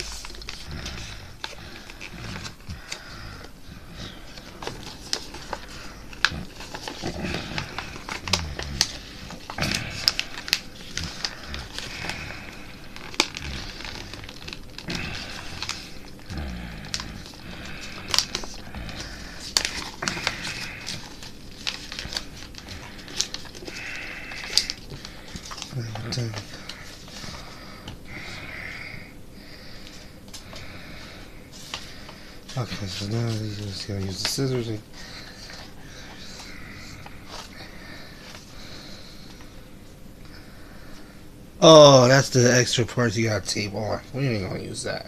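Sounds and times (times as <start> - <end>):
paper crinkling and rustling: 0.0 - 28.0, 31.5 - 39.5.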